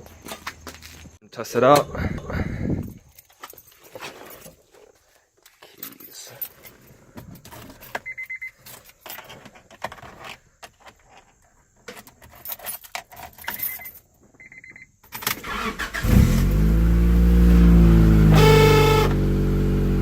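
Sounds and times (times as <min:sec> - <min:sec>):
keys jangling: 0:11.9 - 0:14.1
car engine starting and running: 0:15.2 - 0:20.0.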